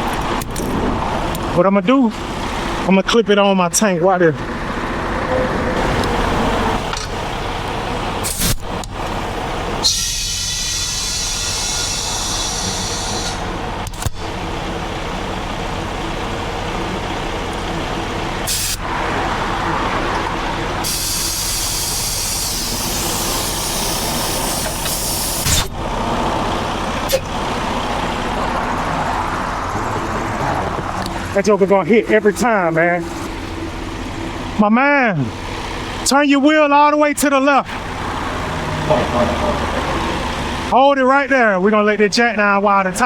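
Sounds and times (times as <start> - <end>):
passing highway traffic: 0.0 - 43.0
compressed air hissing: 8.2 - 8.7, 9.8 - 13.5, 18.4 - 18.9, 20.8 - 26.3.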